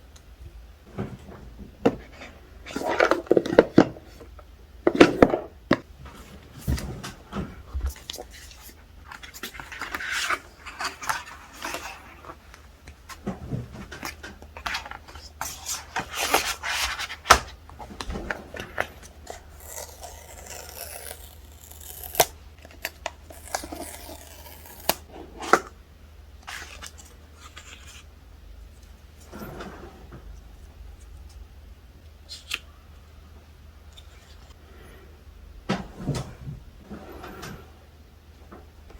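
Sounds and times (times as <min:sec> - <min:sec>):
cardboard packaging rustling and tearing: 0:13.9 - 0:25.6.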